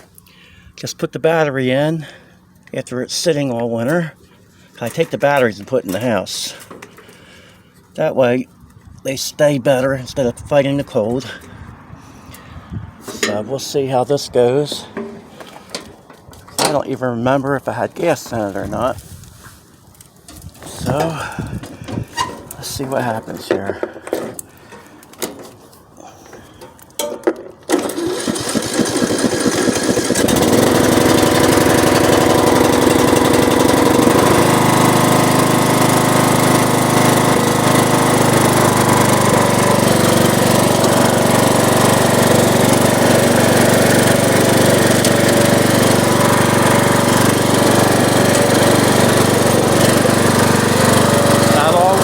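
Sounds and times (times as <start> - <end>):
lawn mower engine running: 3.5 - 8.7, 12.3 - 16.8, 20.6 - 52.0
lawn mower engine cranking: 3.8 - 8.0, 13.0 - 13.7, 14.6 - 16.9, 20.0 - 52.0.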